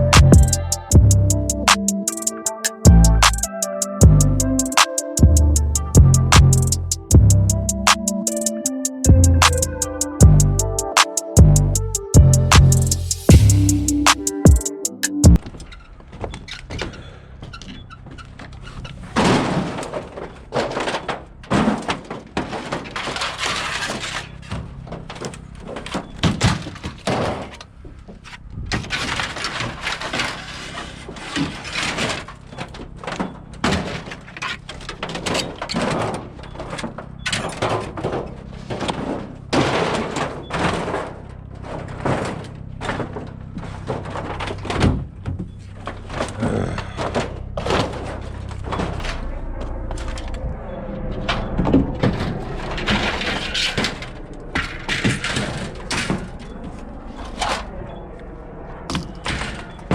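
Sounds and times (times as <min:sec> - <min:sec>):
low hum: 0:00.0 - 0:01.8, 0:02.8 - 0:07.9, 0:09.1 - 0:14.3, 0:47.2 - 0:55.0
scrap metal clanking and crashing: 0:51.2 - 0:56.6.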